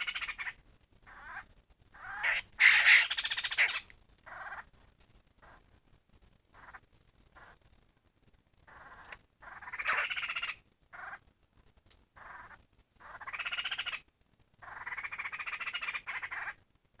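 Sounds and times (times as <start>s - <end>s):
bird giving harsh rattling calls: 2.0s - 4.6s, 8.7s - 10.6s.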